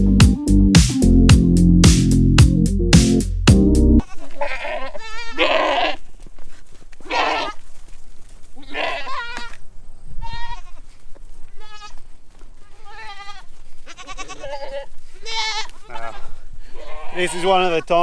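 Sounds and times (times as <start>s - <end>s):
goats bleating: 4.1s - 6.0s, 7.0s - 7.6s, 8.6s - 9.6s, 10.2s - 10.8s, 12.7s - 17.9s.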